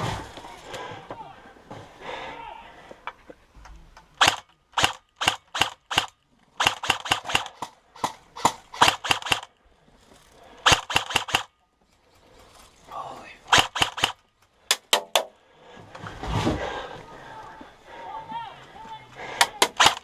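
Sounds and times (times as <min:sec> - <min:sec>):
airsoft guns firing: 0:04.2 - 0:09.5, 0:10.6 - 0:11.5, 0:13.5 - 0:15.3, 0:19.4 - 0:20.0.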